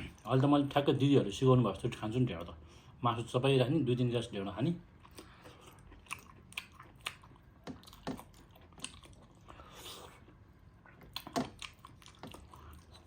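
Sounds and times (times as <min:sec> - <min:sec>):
person chewing: 0:04.9 - 0:13.0.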